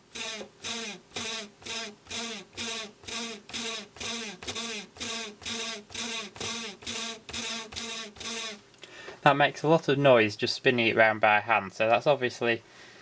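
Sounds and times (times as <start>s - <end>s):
grinding bearing of spinning drum: 0.0s - 8.6s.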